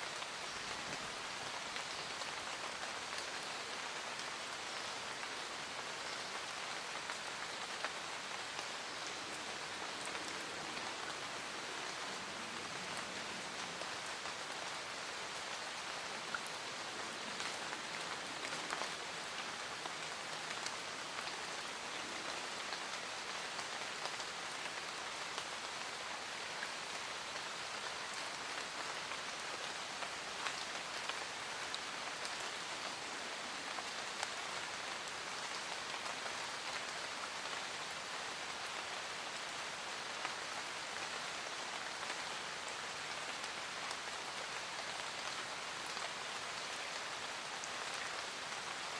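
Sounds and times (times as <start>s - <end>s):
steady rain hiss: 0.0s - 48.9s.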